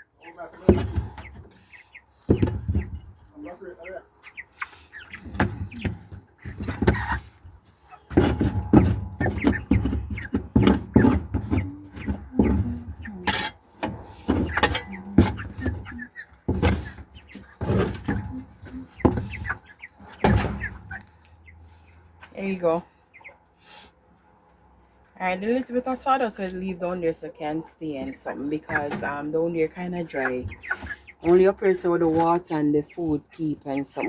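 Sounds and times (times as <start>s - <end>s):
knocks and thunks: 2.3s - 3.1s, 8.1s - 13.1s, 16.5s - 20.9s.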